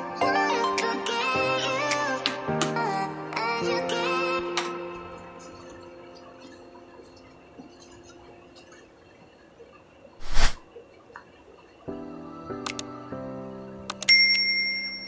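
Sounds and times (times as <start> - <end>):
background music: 0.0 - 8.4, 11.9 - 14.8.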